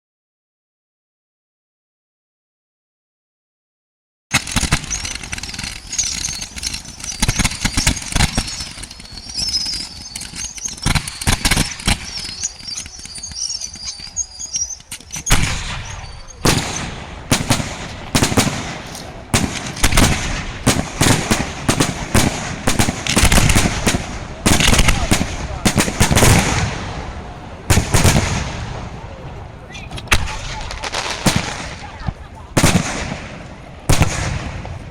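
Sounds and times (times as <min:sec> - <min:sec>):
firework shells bursting: 0:04.3 - 0:27.0
high wavering whistle: 0:05.9 - 0:10.9, 0:11.7 - 0:16.4.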